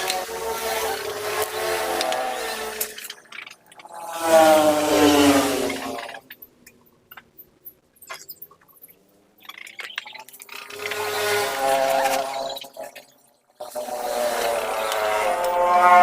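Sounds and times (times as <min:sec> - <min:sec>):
motor running in bursts: 0:00.0 - 0:03.1, 0:13.6 - 0:16.0
metal parts clicking and tapping: 0:01.4 - 0:04.0, 0:05.8 - 0:11.1.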